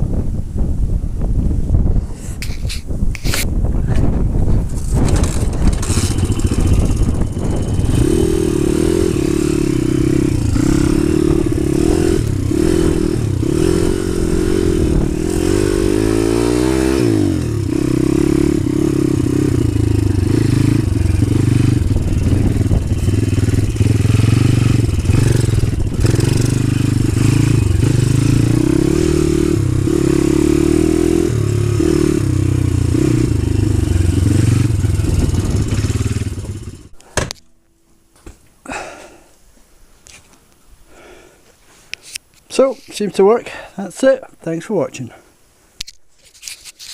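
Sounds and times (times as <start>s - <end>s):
motorbike engine revving: 4.6s - 37.0s.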